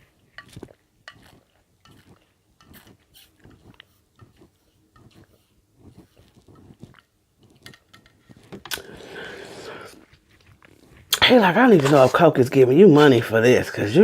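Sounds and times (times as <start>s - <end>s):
person chewing with mouth open: 0.0s - 11.2s.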